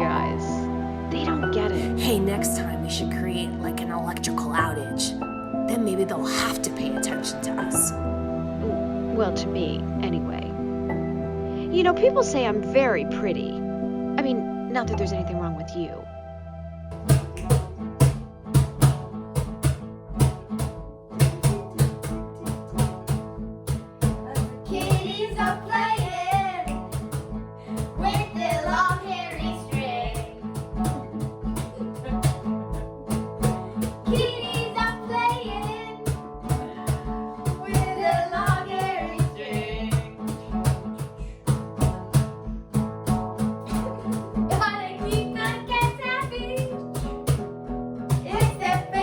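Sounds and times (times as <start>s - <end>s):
plucked guitar: 0.0s - 16.0s, 16.9s - 49.0s
steady drum beat: 16.9s - 48.9s.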